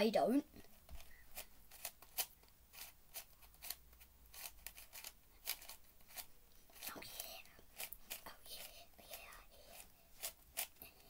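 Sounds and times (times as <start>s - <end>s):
plastic puzzle clicking: 1.0s - 8.7s.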